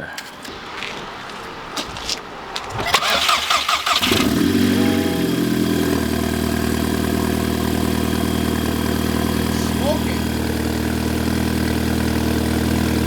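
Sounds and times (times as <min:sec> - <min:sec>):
car engine idling: 0:00.1 - 0:13.0
engine cranking on starter: 0:02.7 - 0:13.0.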